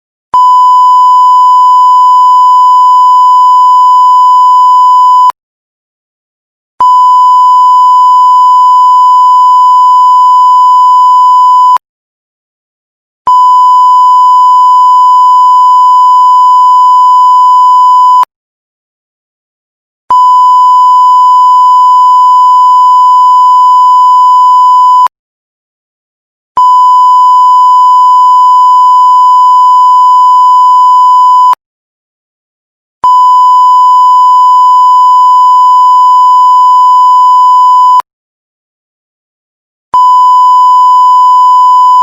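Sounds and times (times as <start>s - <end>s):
censor bleep tone: 0.4s - 5.4s, 6.8s - 11.8s, 13.3s - 18.3s, 20.1s - 25.1s, 26.6s - 31.6s, 33.0s - 38.1s, 40.0s - 42.0s.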